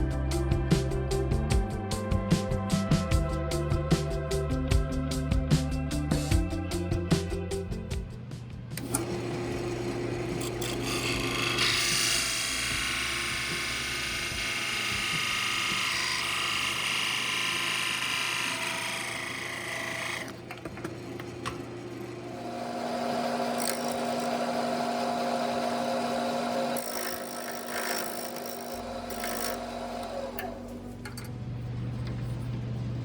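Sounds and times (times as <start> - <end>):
wood lathe motor hum: 8.8 - 30.9
tool scraping spinning wood: 8.8 - 31.0.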